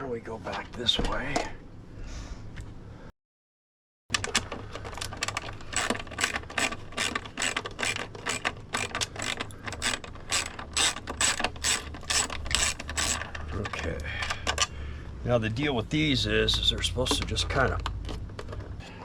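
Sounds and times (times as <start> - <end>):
ratcheting screwdriver clicking: 5.2 - 13.8.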